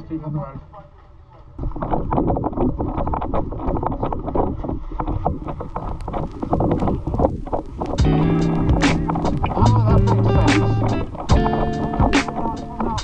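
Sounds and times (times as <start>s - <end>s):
knocks and scrapes: 0.8s - 13.0s
wind noise on microphone: 1.6s - 13.0s.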